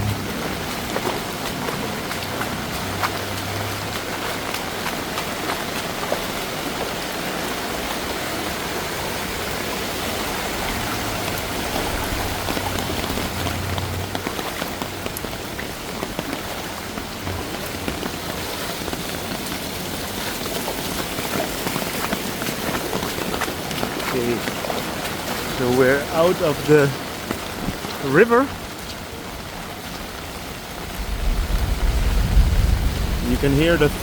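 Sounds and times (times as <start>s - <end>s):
heavy rain pouring: 0.0s - 34.0s
low rumble: 30.8s - 34.0s.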